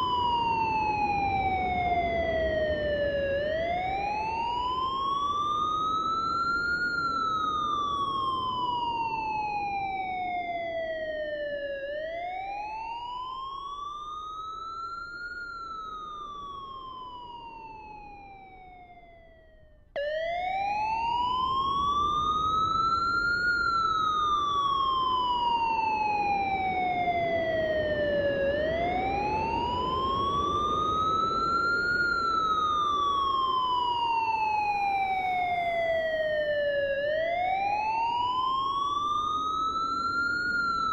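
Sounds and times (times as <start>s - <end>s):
emergency siren wailing: 0.0s - 40.9s.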